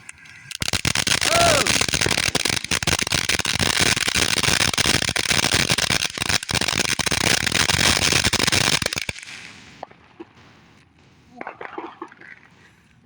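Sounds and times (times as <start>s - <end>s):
firework fountain hissing and crackling: 0.0s - 11.3s.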